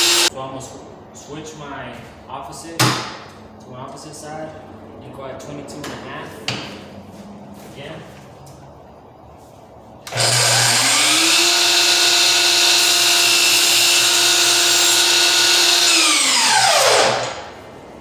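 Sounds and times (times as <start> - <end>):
miter saw motor whining: 0.0 - 0.3, 10.1 - 17.5.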